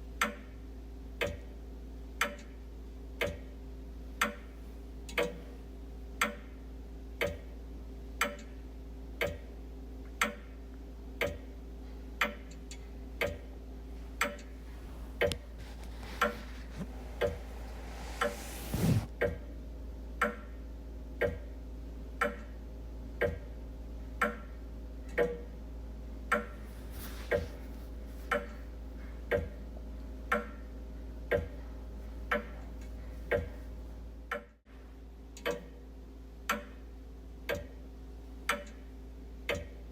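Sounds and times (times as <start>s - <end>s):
wall clock ticking: 0.0s - 0.6s, 1.2s - 2.6s, 3.2s - 3.6s, 4.2s - 5.5s, 6.2s - 8.6s, 9.2s - 10.6s, 11.2s - 14.6s, 21.2s - 21.6s, 22.2s - 22.6s, 23.2s - 23.5s, 24.2s - 25.6s, 26.3s - 26.7s, 27.3s - 29.7s, 30.3s - 30.6s, 31.3s - 31.6s, 32.3s - 33.6s, 35.4s - 35.8s, 37.5s - 37.8s, 38.5s - 38.9s, 39.5s - 39.9s
soft rush of noise: 13.9s - 19.1s, 26.6s - 28.4s.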